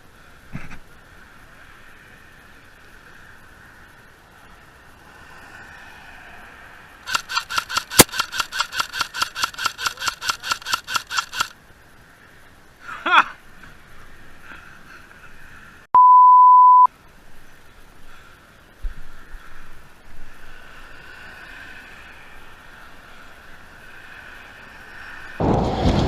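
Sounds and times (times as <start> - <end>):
sharp regular clicks: 7.1 - 11.6
steady pure beep tone: 15.9 - 16.9
loud crack: 25.4 - 26.0.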